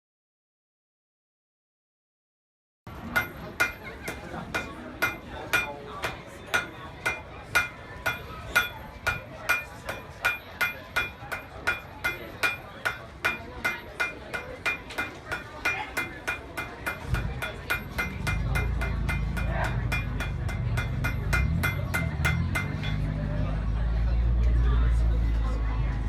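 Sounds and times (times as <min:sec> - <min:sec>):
hammer striking anvil: 0:02.9 - 0:23.2.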